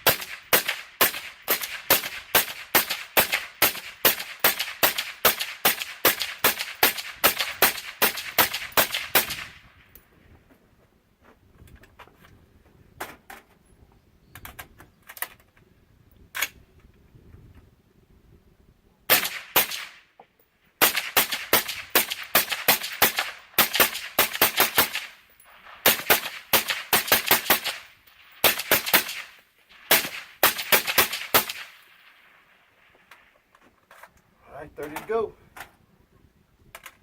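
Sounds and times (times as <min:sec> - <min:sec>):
suppressed rifle gunshots: 0:00.0 - 0:09.6, 0:19.1 - 0:20.0, 0:20.8 - 0:25.2, 0:25.8 - 0:32.4.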